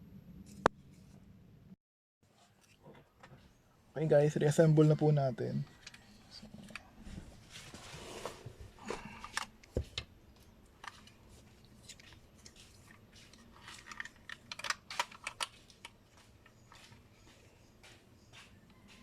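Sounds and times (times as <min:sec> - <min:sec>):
plastic parts clicking and tapping: 0:10.8 - 0:11.2, 0:12.9 - 0:17.0.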